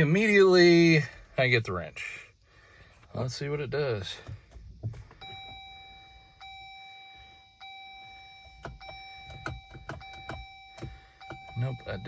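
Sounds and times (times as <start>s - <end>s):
dashboard warning chime: 5.0s - 12.0s.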